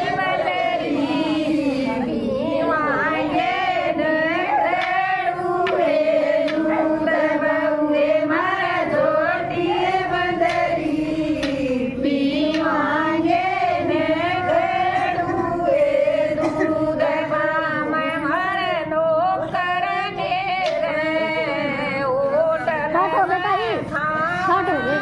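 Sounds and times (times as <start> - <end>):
women singing devotional song: 0.0 - 25.0.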